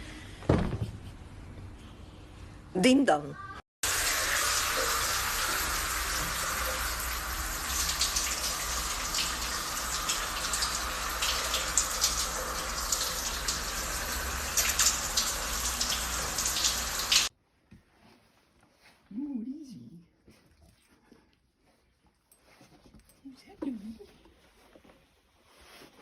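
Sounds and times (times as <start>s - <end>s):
water running: 3.8s - 17.3s.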